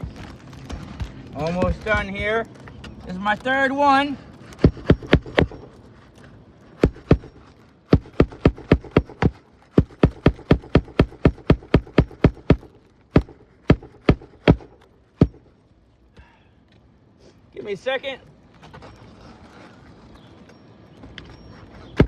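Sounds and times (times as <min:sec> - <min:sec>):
hammer blows on roofing shingle: 0:04.4 - 0:05.8, 0:06.8 - 0:15.5, 0:21.8 - 0:22.0.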